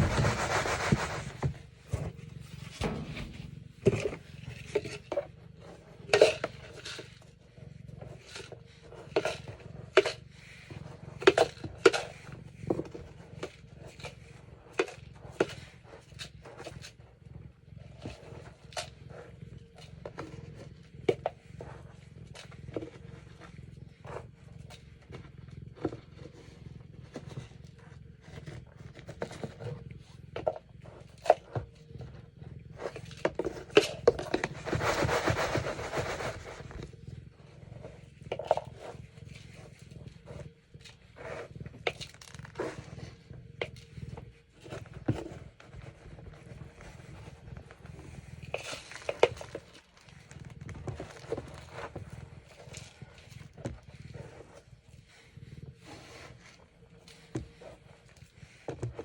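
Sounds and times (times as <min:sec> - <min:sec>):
litter scraping and rustling: 0:00.0 - 0:07.2, 0:30.8 - 0:40.4, 0:41.0 - 0:54.7.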